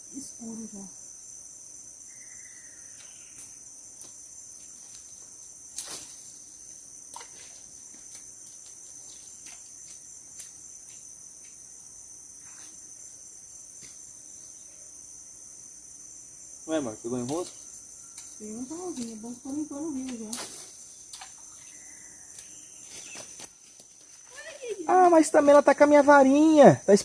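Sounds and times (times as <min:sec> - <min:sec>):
crickets and insects chorus: 0:00.0 - 0:27.0.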